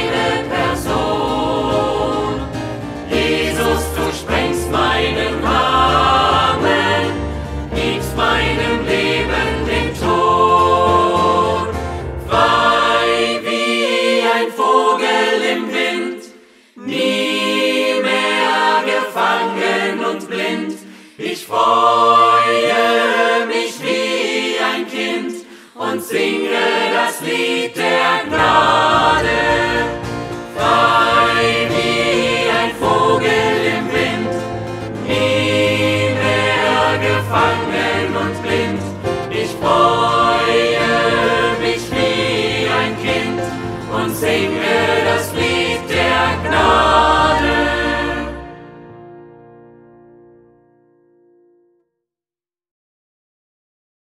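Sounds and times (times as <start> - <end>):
instrumental backing: 0.0 - 13.7, 27.3 - 50.7
choir singing: 0.0 - 49.4.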